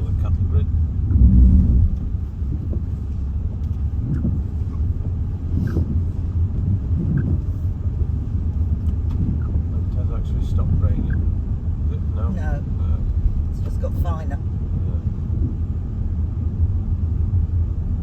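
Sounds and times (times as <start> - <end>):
car driving on wet road: 0.0 - 18.0.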